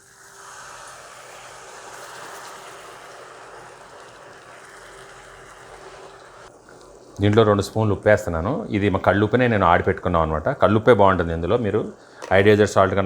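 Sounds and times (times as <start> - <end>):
liquid sizzling in hot oil: 0.0 - 13.0.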